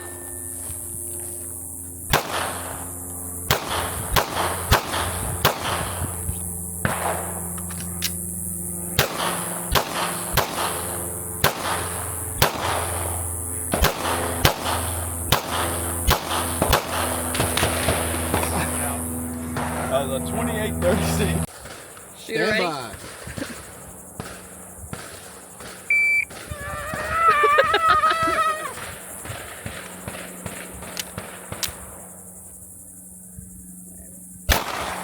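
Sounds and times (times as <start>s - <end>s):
low hum: 0.0s - 21.5s, 23.6s - 35.0s
pistol shots: 2.1s - 2.8s, 3.5s - 6.1s, 6.8s - 7.4s, 9.0s - 13.1s, 13.7s - 18.5s, 29.3s - 31.8s, 34.5s - 35.0s.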